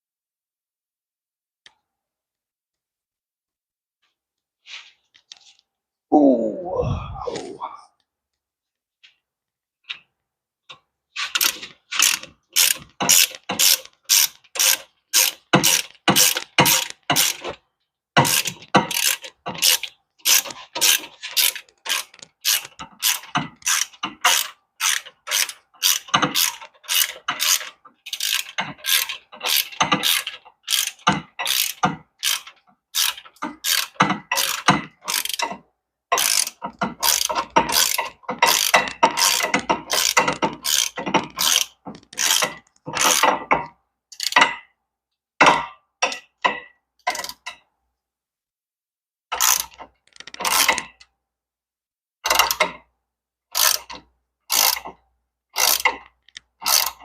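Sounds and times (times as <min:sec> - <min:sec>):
socket ratchet clicking: 0:11.4 - 0:17.4, 0:18.3 - 0:35.4, 0:36.2 - 0:43.2, 0:44.2 - 0:44.4, 0:54.5 - 0:54.8, 0:55.6 - 0:57.0.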